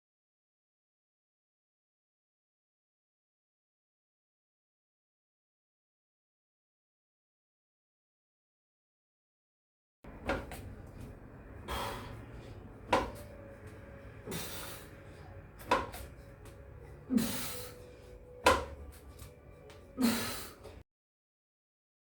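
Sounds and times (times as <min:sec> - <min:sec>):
person breathing out hard: 0:11.6 - 0:13.2, 0:14.2 - 0:15.4, 0:17.0 - 0:18.2, 0:20.0 - 0:20.8.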